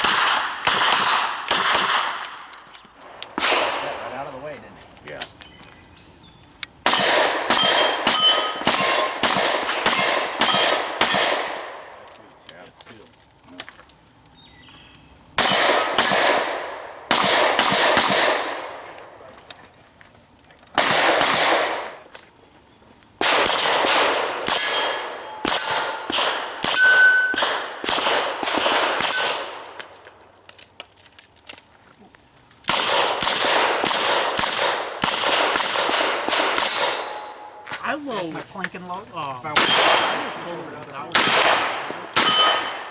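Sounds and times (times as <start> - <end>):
revolver gunshots: 0.0 - 2.4, 3.1 - 4.2, 6.8 - 11.8, 15.4 - 19.0, 20.8 - 22.0, 23.2 - 29.8, 32.7 - 38.0, 39.5 - 42.9
steel targets clanging: 7.5 - 9.2, 36.7 - 42.9.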